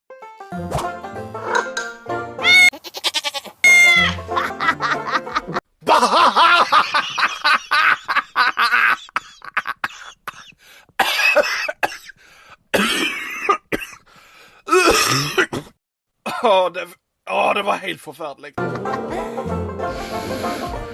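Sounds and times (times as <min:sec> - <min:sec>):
shrill voice-like cries: 0:02.4 - 0:04.2.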